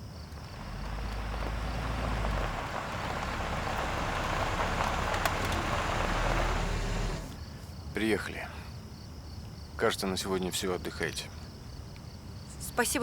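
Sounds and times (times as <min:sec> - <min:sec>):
tyre and road noise: 0:00.0 - 0:07.5
car engine rumble: 0:00.0 - 0:07.6.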